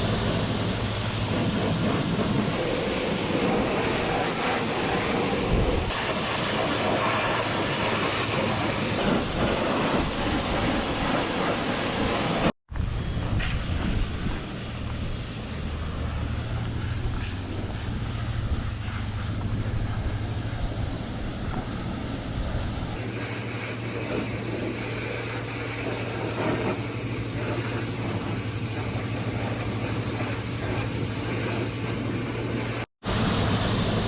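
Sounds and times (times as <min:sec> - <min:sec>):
water jet spattering on machinery: 0:23.0 - 0:32.9.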